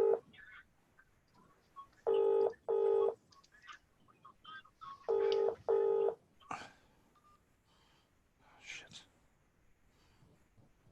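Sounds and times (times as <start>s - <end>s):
telephone ringback tone: 0.0s - 0.2s, 2.1s - 3.2s, 5.1s - 6.2s.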